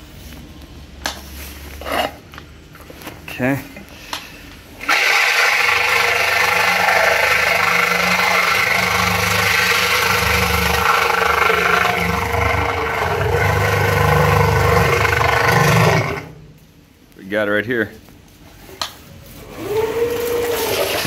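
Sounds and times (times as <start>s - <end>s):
drain cleaning machine motor whine: 4.8s - 16.4s, 19.4s - 21.0s.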